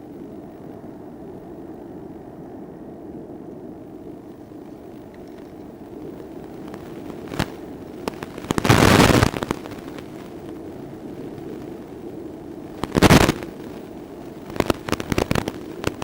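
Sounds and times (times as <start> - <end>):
loud crackling bursts: 4.9 - 16.0
scattered clicks: 6.6 - 10.1, 12.8 - 13.5, 14.5 - 16.0.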